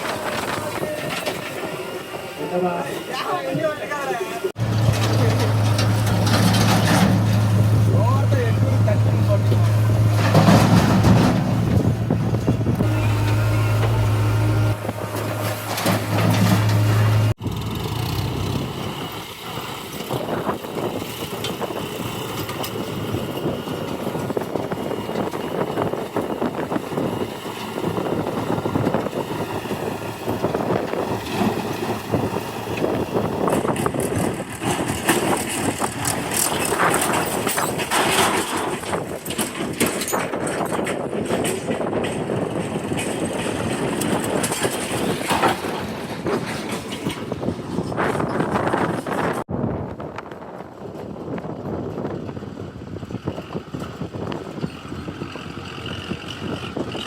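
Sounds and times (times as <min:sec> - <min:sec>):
diesel engine running: 0:04.5 - 0:39.8.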